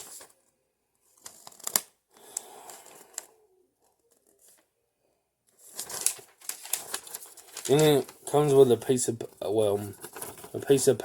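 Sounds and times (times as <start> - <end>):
paper crackling: 0.0 - 0.4, 1.2 - 4.6, 5.5 - 11.0
paper pages rustling: 0.0 - 0.5, 1.2 - 1.9, 5.5 - 11.0.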